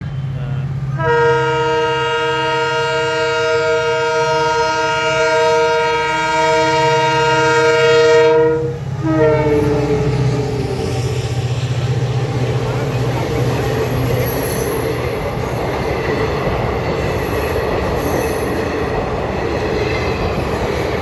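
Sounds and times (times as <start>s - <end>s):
locomotive horn blast: 0.9s - 11.1s.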